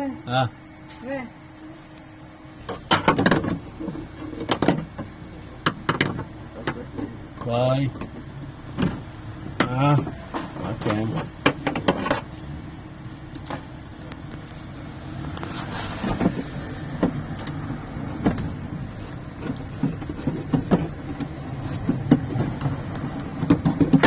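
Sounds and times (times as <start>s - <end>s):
steady low hum: 0.0s - 24.0s
tools and parts clicking and knocking: 2.7s - 7.1s, 9.6s - 12.3s, 19.4s - 24.0s.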